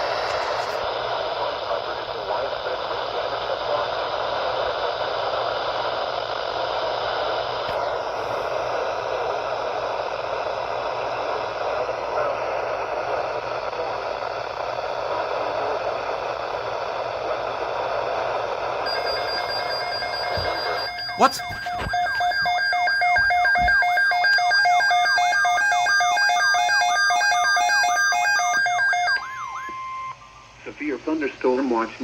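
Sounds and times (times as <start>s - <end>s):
radio static hiss: 0.0s - 24.2s, 27.8s - 32.0s
faint steady tones: 7.7s - 32.0s.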